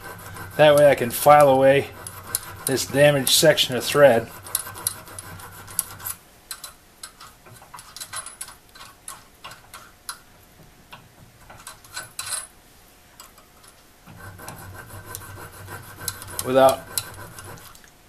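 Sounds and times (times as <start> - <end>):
file scraping metal threads: 0.0 - 6.2, 14.1 - 17.8.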